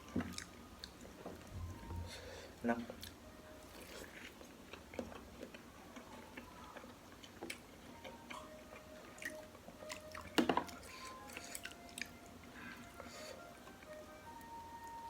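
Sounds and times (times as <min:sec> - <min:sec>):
close chewing mouth sounds: 0:02.9 - 0:13.9.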